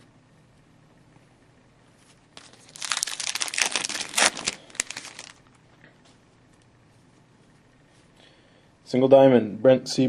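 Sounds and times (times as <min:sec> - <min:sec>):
foil wrapper crinkling: 0:02.4 - 0:05.5.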